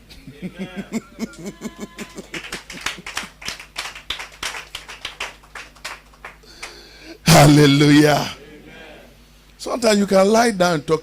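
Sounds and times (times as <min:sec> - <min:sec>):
people clapping: 0:01.2 - 0:06.9.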